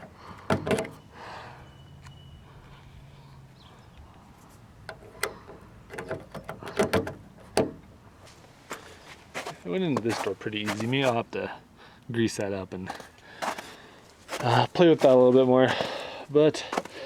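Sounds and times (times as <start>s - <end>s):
key rattling in car door lock: 0.0s - 1.0s, 4.8s - 8.0s.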